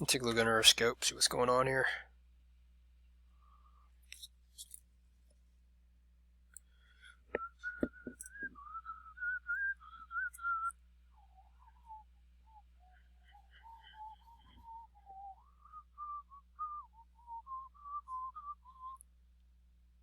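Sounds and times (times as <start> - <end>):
person whistling a tune: 7.4 - 19.0.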